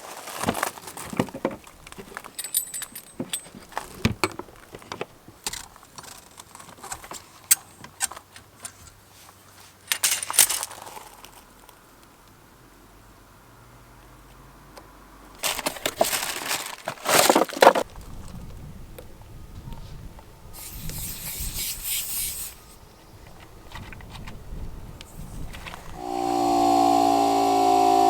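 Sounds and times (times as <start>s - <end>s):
small metallic clinks and rattles: 1.4s - 9.0s, 9.8s - 11.4s.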